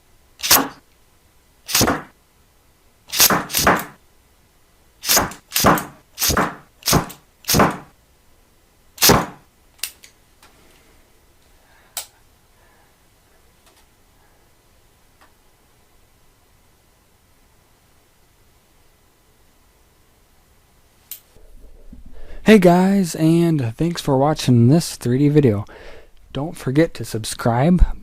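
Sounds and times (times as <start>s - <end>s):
nail gun shots: 0.4s - 0.8s, 1.7s - 2.1s, 3.1s - 4.0s, 5.0s - 7.9s, 9.0s - 9.4s.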